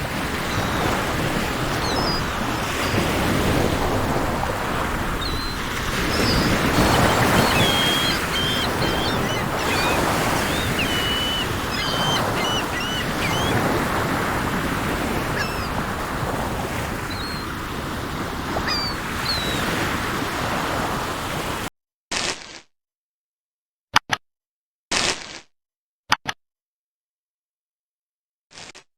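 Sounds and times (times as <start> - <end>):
sea surf washing: 0.0 - 21.7
small birds chirping: 0.3 - 3.6, 5.1 - 14.5, 15.2 - 15.8, 17.1 - 17.5, 18.6 - 19.7.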